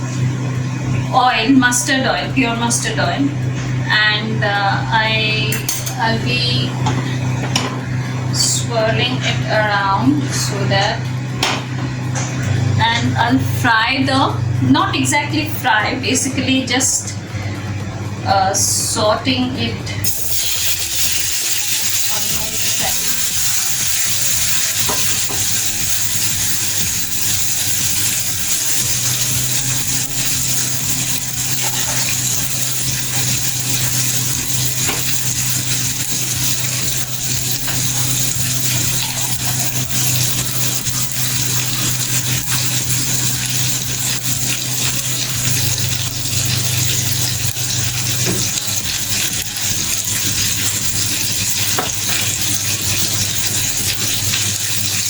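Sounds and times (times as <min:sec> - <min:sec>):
fish sizzling in oil: 0:20.0 - 0:55.0.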